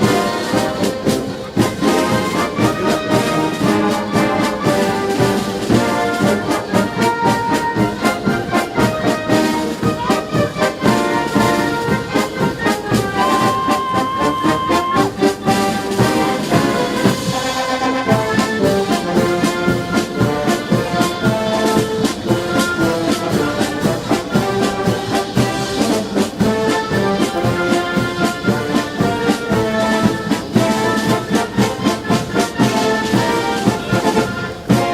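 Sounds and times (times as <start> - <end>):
brass band playing: 0.0 - 34.9
percussion beat: 0.0 - 34.9.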